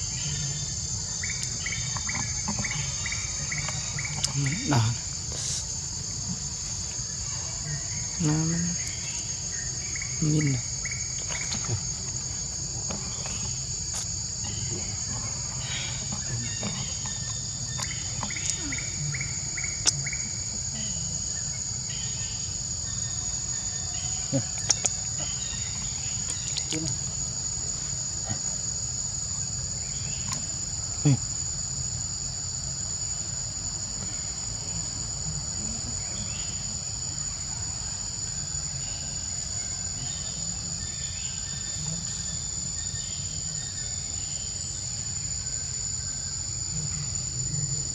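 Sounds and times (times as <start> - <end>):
insects shrilling: 0.0 - 47.9.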